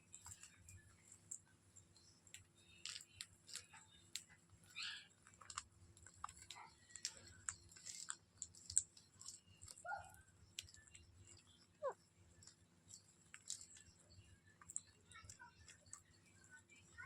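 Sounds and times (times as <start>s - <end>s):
parakeet beaks crunching pods: 0.1s - 17.0s
parakeet chirp: 4.7s - 5.1s.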